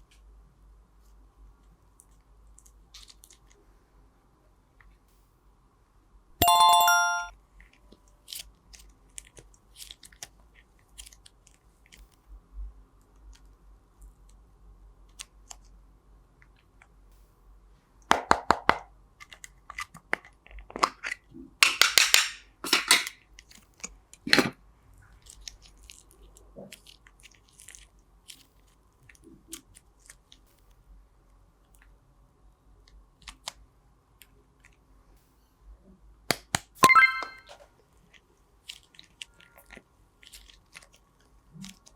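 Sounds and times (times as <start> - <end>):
chime-like ringing tone: 6.4 - 7.3, 36.8 - 37.5.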